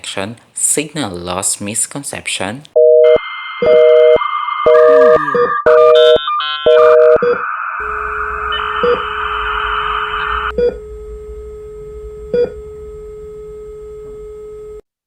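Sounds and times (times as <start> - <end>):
heart monitor beeps: 2.8 - 10.8
static hiss: 7.8 - 10.6.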